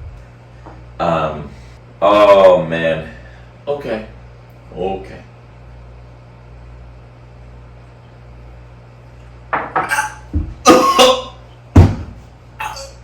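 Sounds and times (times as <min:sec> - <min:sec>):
man coughing and spluttering: 0:09.8 - 0:11.4, 0:12.6 - 0:13.0.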